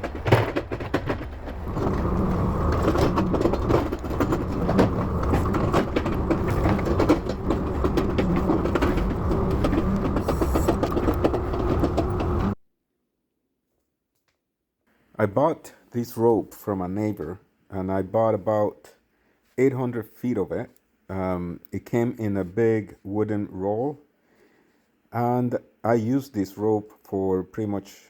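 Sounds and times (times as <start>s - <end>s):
clattering knocks: 0.0s - 12.6s
diesel engine running: 0.0s - 12.6s.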